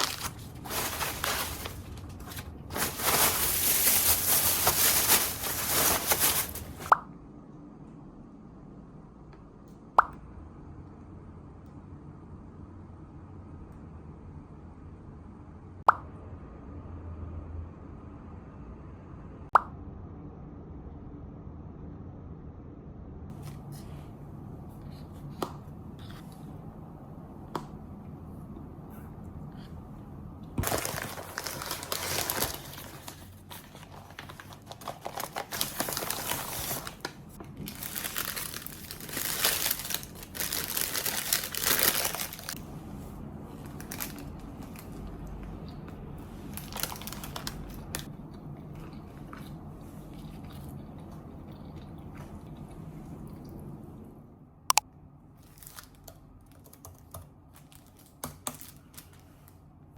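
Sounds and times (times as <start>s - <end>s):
packaging crinkling and rustling: 0.0s - 6.9s, 30.6s - 42.6s, 43.5s - 45.3s, 46.4s - 48.1s, 55.4s - 59.6s
low room hum: 0.0s - 59.9s.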